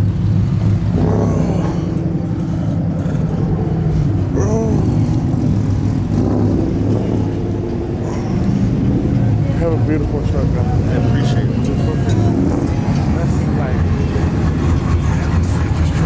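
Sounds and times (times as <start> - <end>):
truck engine idling: 0.0 - 16.0.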